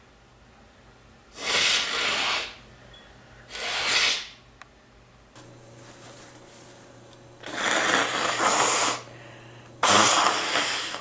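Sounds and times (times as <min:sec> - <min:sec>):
person blowing nose: 0:01.3 - 0:02.6, 0:03.5 - 0:04.4, 0:07.4 - 0:09.1, 0:09.8 - 0:11.0.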